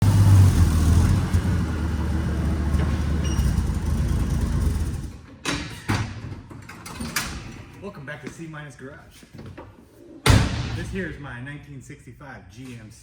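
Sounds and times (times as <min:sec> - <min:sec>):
vehicle engine running: 0:00.0 - 0:05.1.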